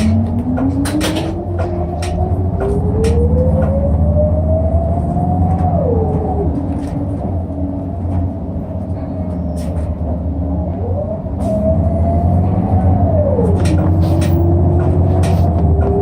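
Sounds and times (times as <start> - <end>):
cabin rattles and clicks: 0.0 - 4.0
rising whine: 0.0 - 8.9, 10.2 - 16.0
bus engine rumble: 0.0 - 16.0.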